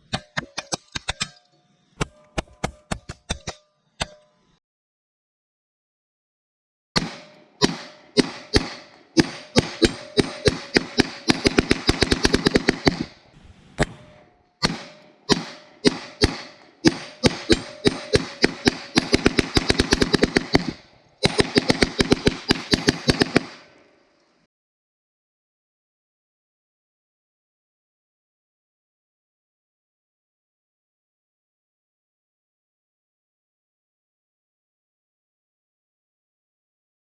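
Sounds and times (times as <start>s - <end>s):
rapid gunfire: 7.0s - 24.0s.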